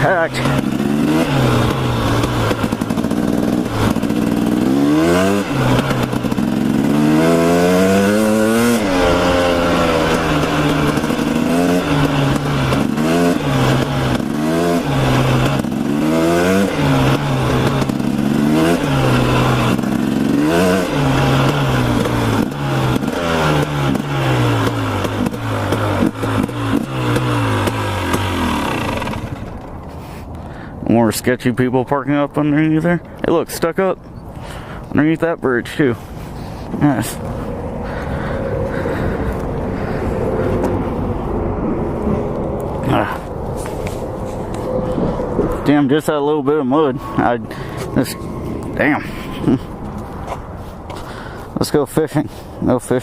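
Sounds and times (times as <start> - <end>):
dirt bike engine revving: 0.0 - 30.0, 42.8 - 51.5
wind noise on microphone: 36.4 - 46.0.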